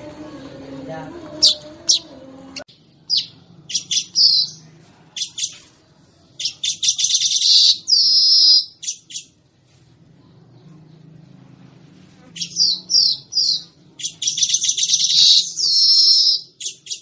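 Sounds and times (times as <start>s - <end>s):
bird singing chips and buzzes: 3.1s - 4.6s, 6.4s - 9.3s, 12.3s - 17.0s.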